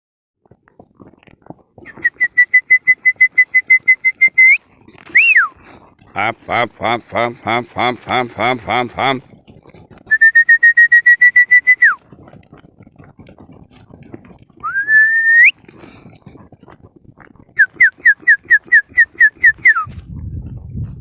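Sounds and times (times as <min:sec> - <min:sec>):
person whistling to call animals: 0:01.9 - 0:05.6, 0:10.1 - 0:12.0, 0:14.6 - 0:15.6, 0:17.6 - 0:20.0.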